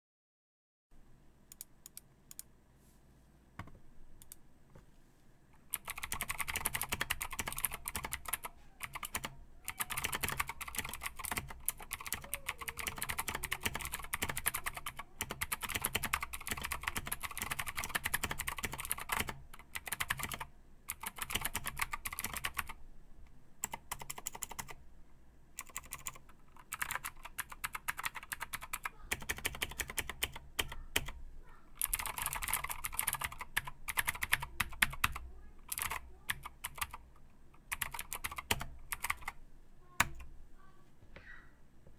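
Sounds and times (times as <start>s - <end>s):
typing on clicky mechanical keyboard: 5.7s - 22.8s, 23.6s - 24.8s, 25.6s - 31.2s, 31.8s - 39.4s.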